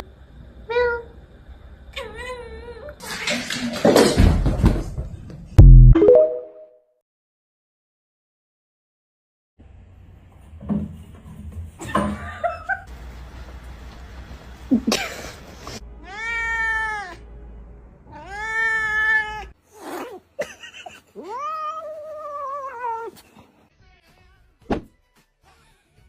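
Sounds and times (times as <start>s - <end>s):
cat meowing: 16.0s - 17.2s, 18.1s - 20.2s, 21.2s - 23.2s.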